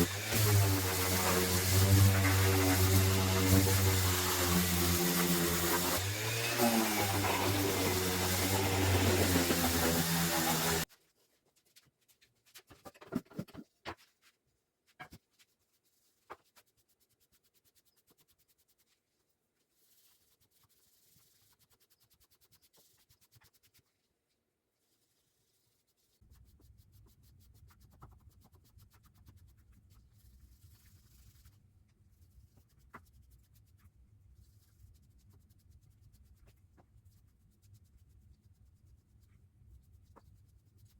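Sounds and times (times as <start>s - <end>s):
small power tool motor running: 0.0s - 10.8s
handling taps and scrapes: 11.5s - 15.6s.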